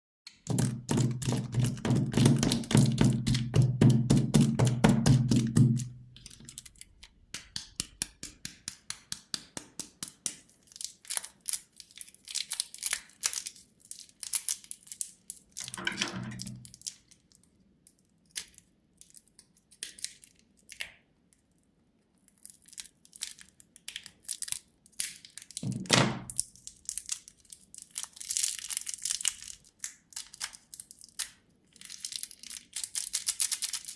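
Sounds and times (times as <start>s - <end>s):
candy clattering: 0.5s - 7.8s, 10.6s - 17.3s, 26.2s - 33.9s
plastic wrappers crinkling and tearing: 5.4s - 7.3s, 10.4s - 20.8s, 22.2s - 33.9s.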